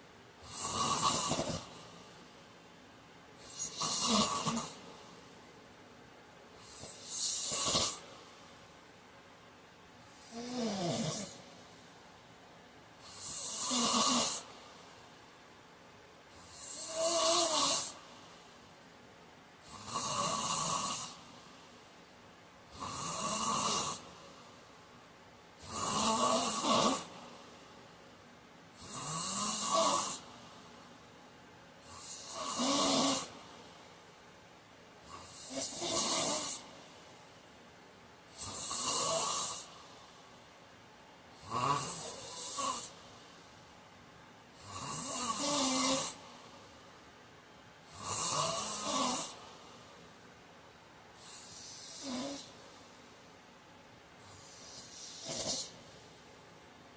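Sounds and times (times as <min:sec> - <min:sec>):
man snoring: 0:00.4 - 0:01.9, 0:03.4 - 0:04.8, 0:06.6 - 0:08.0, 0:10.2 - 0:11.4, 0:13.0 - 0:14.5, 0:16.4 - 0:18.0, 0:19.6 - 0:21.2, 0:22.7 - 0:24.1, 0:25.6 - 0:27.2, 0:28.8 - 0:30.3, 0:31.8 - 0:33.4, 0:35.0 - 0:36.7, 0:38.3 - 0:39.8, 0:41.4 - 0:43.0, 0:44.6 - 0:46.2, 0:47.9 - 0:49.4, 0:51.2 - 0:52.6, 0:54.2 - 0:55.8.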